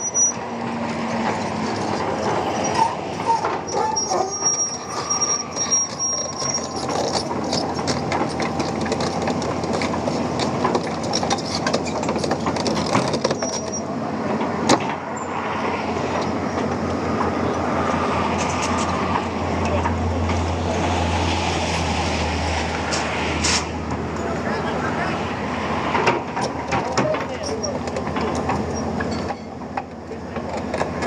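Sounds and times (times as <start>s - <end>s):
thin high squeal: 0.0s - 0.4s, 2.6s - 8.0s
excavator engine and machinery: 0.0s - 31.0s.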